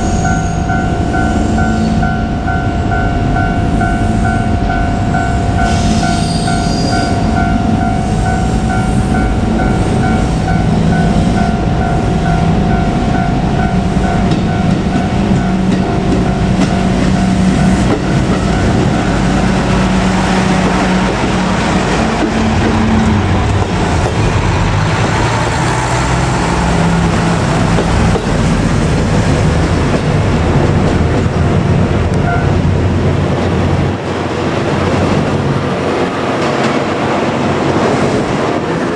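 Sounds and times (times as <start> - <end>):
level crossing warning bell: 0.0 - 24.1
diesel railcar running: 0.0 - 38.9.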